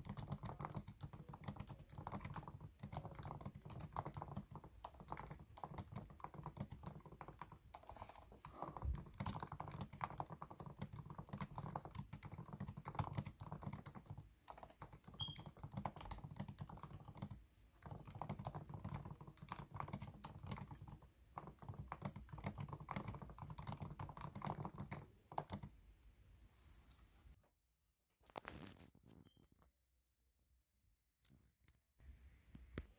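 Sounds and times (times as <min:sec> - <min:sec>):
rapid keyboard typing: 0:00.0 - 0:25.8.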